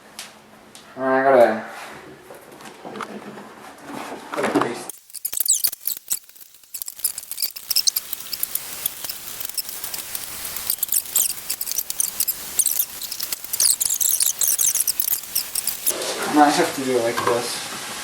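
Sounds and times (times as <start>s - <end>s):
meat sizzling in a skillet: 4.9s - 16.0s, 17.6s - 18.0s.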